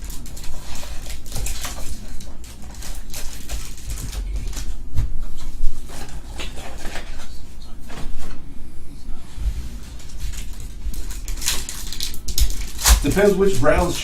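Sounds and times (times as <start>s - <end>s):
cardboard cards shuffled by hand: 0.0s - 4.8s, 9.4s - 14.0s
foil wrappers crinkling: 0.0s - 7.4s, 9.8s - 14.0s
steady low hum: 0.0s - 14.0s.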